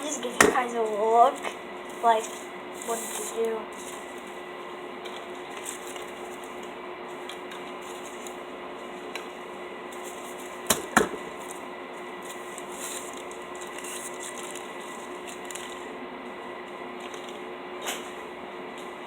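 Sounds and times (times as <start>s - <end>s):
paper wrappers rustling: 0.0s - 4.4s, 5.0s - 15.9s, 17.0s - 17.4s.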